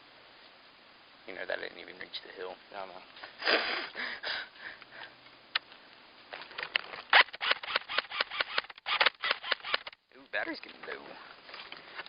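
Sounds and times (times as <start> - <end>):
airsoft gun clicking shots: 6.7 - 10.0.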